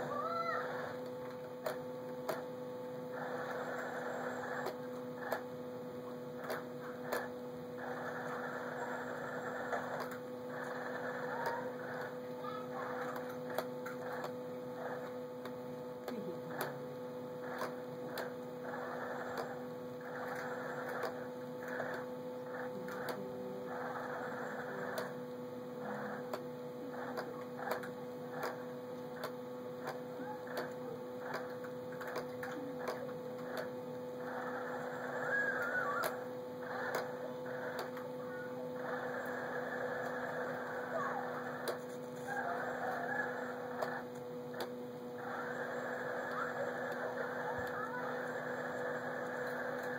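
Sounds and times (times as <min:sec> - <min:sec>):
bursts of rough noise: 0:00.0 - 0:49.9
steady electrical hum: 0:00.0 - 0:49.9
sharp clicks: 0:42.6 - 0:49.9.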